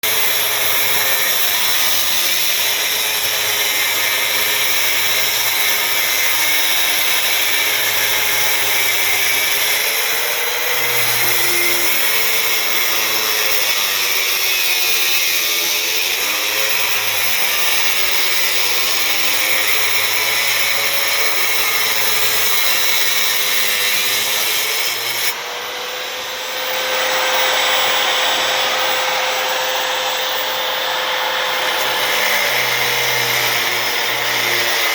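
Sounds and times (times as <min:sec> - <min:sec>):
power tool running: 0:00.0 - 0:34.9.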